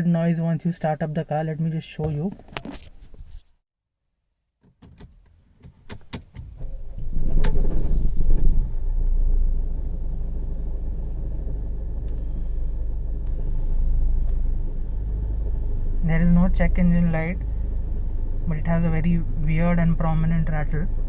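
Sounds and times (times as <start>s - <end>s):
engine rattling: 5.2s - 21.0s
diesel engine starting and idling: 6.3s - 21.0s.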